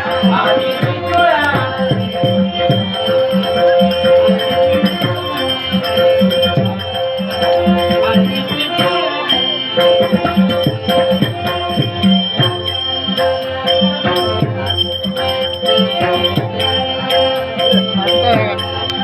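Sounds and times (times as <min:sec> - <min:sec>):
hand drum rhythm: 0:00.0 - 0:19.0
jingling percussion: 0:00.0 - 0:19.0
sustained held notes: 0:00.0 - 0:19.0.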